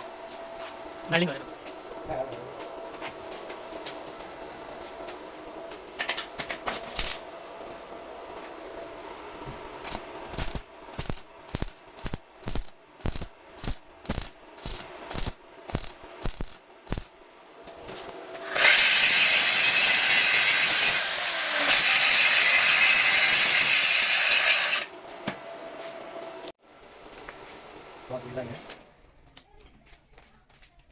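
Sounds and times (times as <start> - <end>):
power tool running: 18.3 - 24.9.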